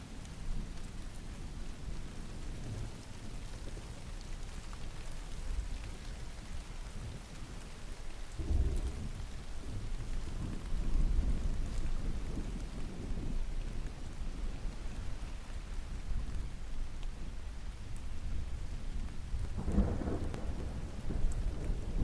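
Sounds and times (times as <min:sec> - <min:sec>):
steady rain: 0:00.0 - 0:22.0
thunder rumbling: 0:08.4 - 0:15.8, 0:19.4 - 0:22.0.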